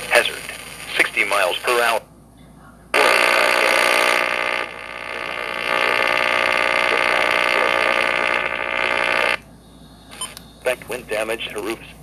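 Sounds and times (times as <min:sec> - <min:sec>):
harsh electronic alert buzz: 0:03.0 - 0:09.4.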